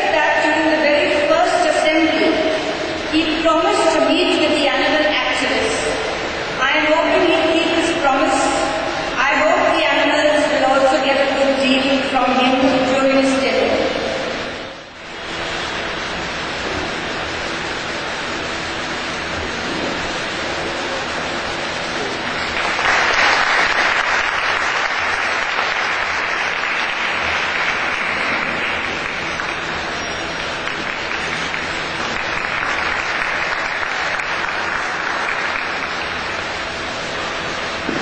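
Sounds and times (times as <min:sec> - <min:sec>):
audience applauding: 0:22.4 - 0:36.5.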